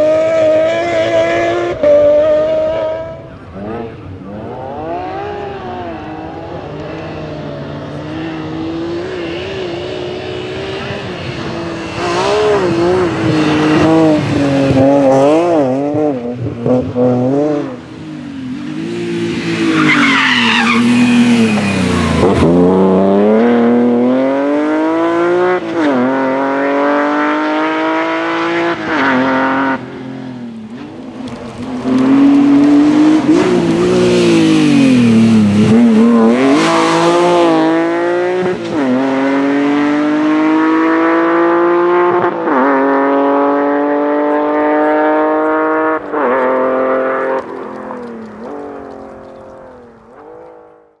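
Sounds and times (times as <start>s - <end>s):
rally car engine revving: 0.0s - 51.0s
tyres squealing: 19.6s - 22.4s.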